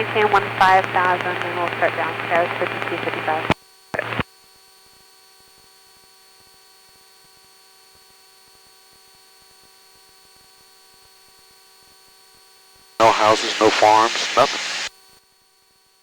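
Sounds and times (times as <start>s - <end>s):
electrical hum and buzz: 0.0s - 4.2s, 13.0s - 14.9s
radio audio burst: 0.0s - 4.2s, 13.0s - 14.9s.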